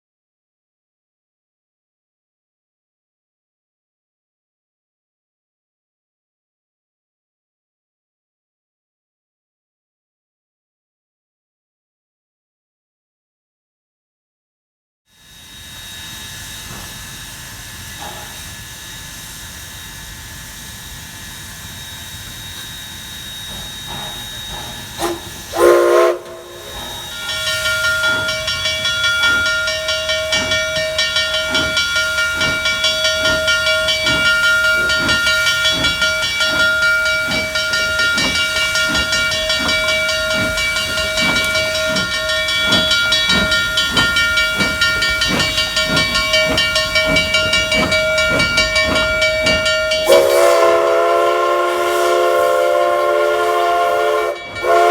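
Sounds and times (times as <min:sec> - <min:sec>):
steam locomotive exhaust chuffs: 0:15.1 - 0:54.9
steam hissing: 0:15.2 - 0:54.9
steam whistle blast: 0:23.4 - 0:28.7, 0:49.9 - 0:54.9
steady ringing tones: 0:26.4 - 0:50.1.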